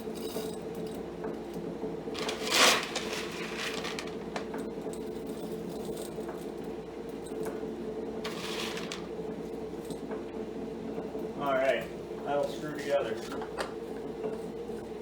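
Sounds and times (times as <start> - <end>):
steady machine hum: 0.0 - 15.0
beans rattling into tester: 2.2 - 4.6, 8.2 - 9.2.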